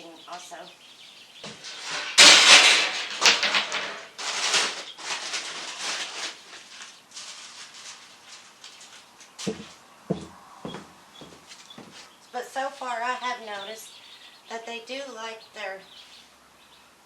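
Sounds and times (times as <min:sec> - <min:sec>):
rustling and scraping handling noise: 0:01.4 - 0:12.2.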